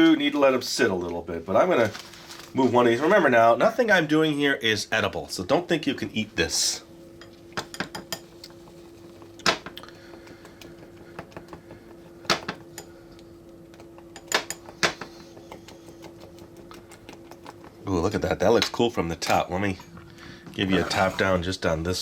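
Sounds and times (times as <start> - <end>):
bowls and spoon clinking: 7.2 - 17.8.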